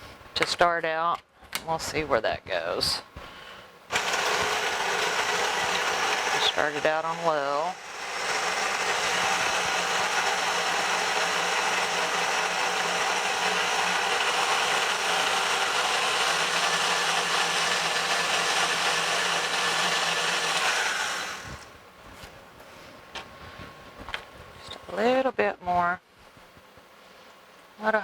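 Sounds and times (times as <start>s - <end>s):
electric mixer running: 3.9s - 21.7s.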